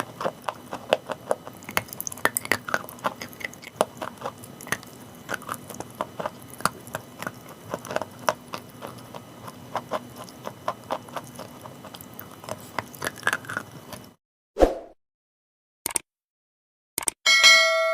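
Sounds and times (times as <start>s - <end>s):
chalk chewing crunches: 0.0s - 14.2s.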